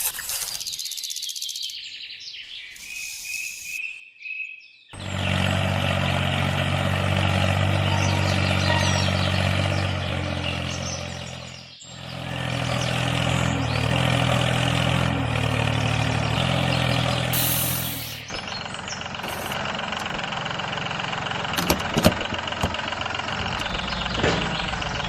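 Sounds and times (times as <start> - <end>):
engine running with deep hum: 5.0 - 25.0.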